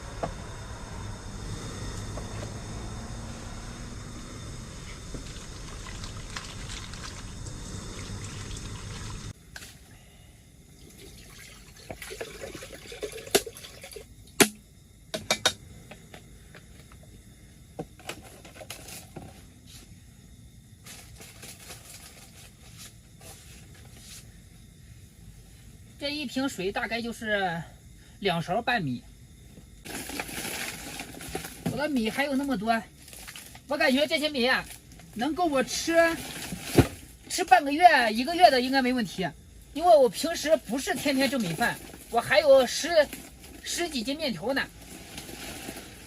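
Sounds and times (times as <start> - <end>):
steady hiss with low hum: 0.0 - 46.0
water pouring and trickling: 5.2 - 9.4, 10.8 - 14.1.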